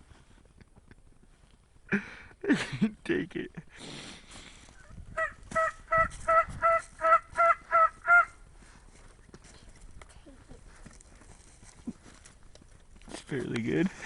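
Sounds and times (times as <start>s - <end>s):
turkey yelps: 5.2s - 8.4s.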